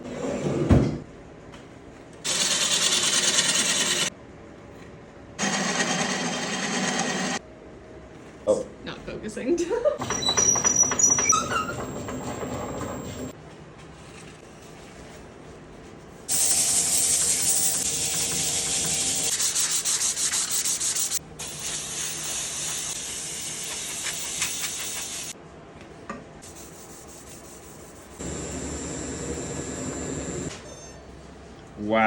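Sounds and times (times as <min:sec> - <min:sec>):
sandpaper rubbing wood: 0:16.5 - 0:25.4.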